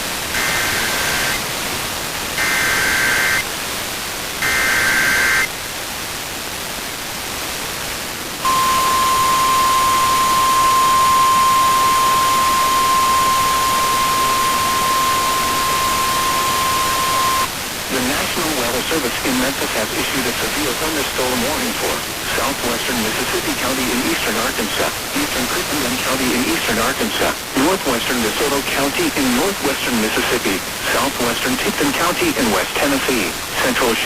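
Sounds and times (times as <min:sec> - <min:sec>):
radio static hiss: 0:00.0 - 0:06.2, 0:07.4 - 0:34.0
two-tone data bursts: 0:00.4 - 0:01.4, 0:02.4 - 0:03.4, 0:04.4 - 0:05.5, 0:08.4 - 0:17.5
steady high alert tone: 0:08.4 - 0:17.5.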